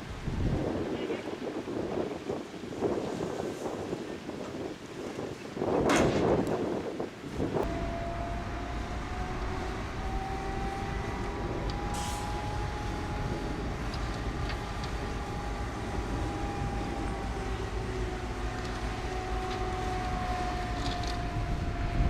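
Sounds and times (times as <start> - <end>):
bulldozer diesel engine running: 7.6 - 22.0.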